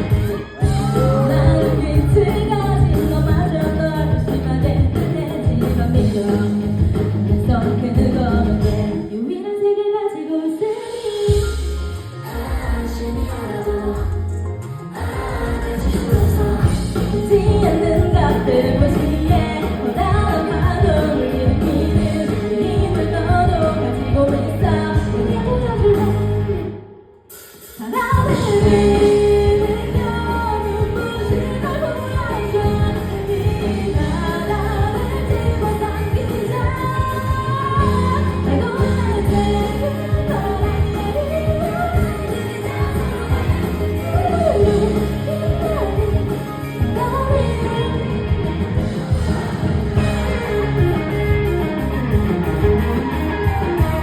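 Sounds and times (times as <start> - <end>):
person singing: 0.0 - 26.7
live pop band playing: 0.0 - 54.0.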